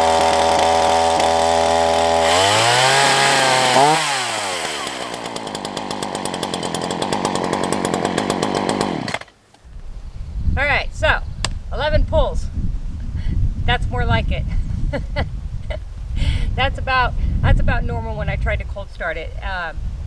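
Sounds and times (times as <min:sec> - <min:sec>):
chainsaw idling: 0:00.0 - 0:09.4.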